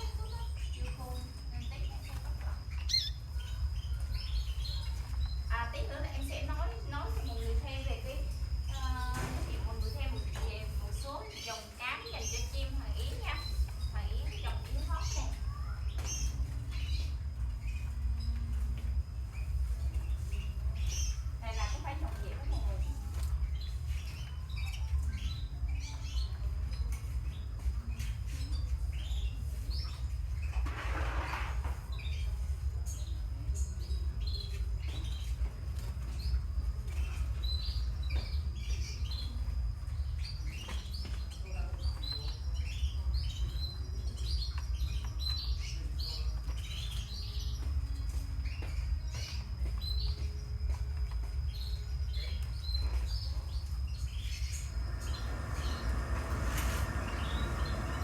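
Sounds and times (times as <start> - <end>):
canaries chirping and trilling: 0.0 - 58.0
steady low hum: 0.0 - 58.0.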